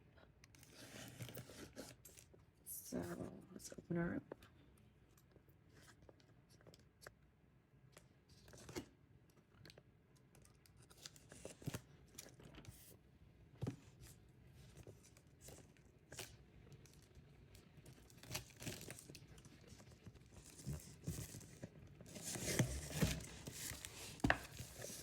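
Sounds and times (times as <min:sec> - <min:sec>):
packaging rustling and tearing: 0:17.9 - 0:25.0.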